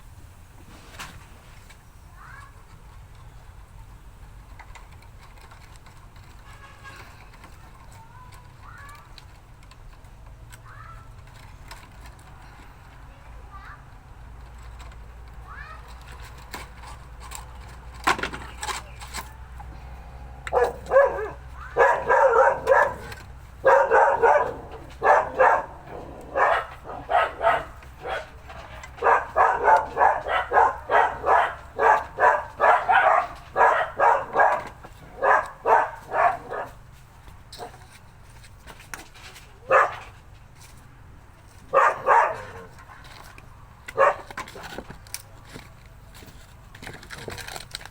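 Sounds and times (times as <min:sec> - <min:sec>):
dog barking: 0:20.4 - 0:36.8, 0:39.6 - 0:40.1, 0:41.7 - 0:43.2, 0:44.0 - 0:44.7.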